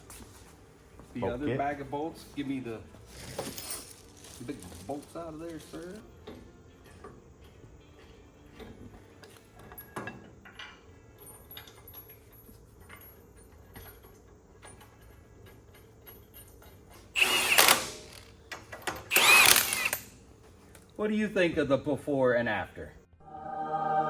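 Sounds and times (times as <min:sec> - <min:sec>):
metallic clicks and ratcheting: 0:12.9 - 0:20.1
cordless power tool driving bolt: 0:17.2 - 0:20.2.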